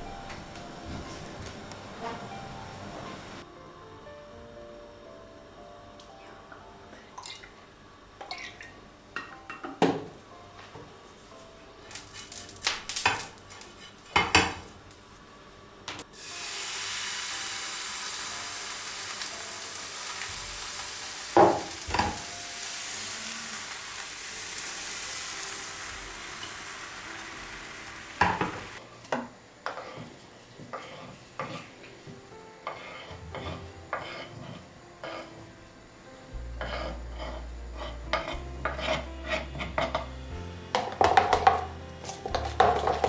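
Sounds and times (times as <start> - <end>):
hot pan sizzling: 16.0 - 28.8.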